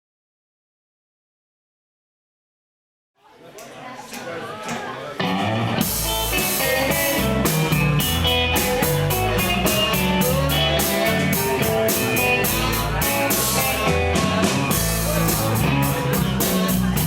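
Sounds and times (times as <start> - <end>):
bass guitar: 5.2 - 17.0
drum kit beat: 5.2 - 17.0
electric guitar: 5.2 - 17.0.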